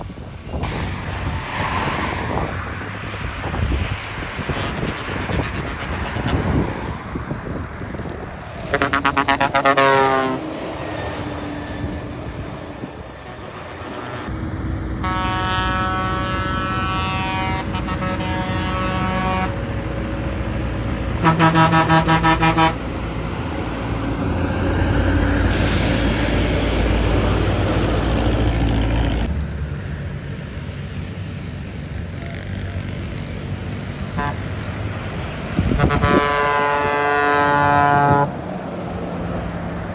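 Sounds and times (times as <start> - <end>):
bus air horn blasts: 4.5 - 6.7, 8.6 - 10.5, 15.0 - 19.7, 21.2 - 22.8, 34.1 - 34.5, 35.6 - 38.4.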